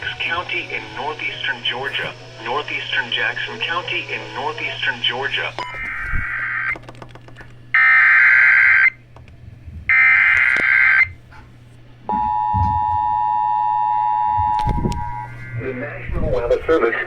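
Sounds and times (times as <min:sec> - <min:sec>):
buzzy data bursts: 0:00.0 - 0:06.8
two-tone attention signal: 0:12.1 - 0:15.4.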